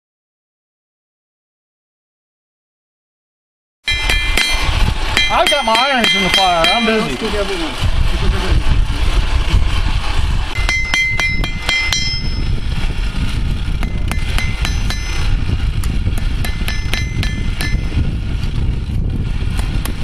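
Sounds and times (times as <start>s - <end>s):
hammer striking steel anvil: 3.9s - 7.1s, 10.6s - 12.6s, 13.8s - 15.3s, 16.2s - 18.0s
low rumble: 7.2s - 20.0s.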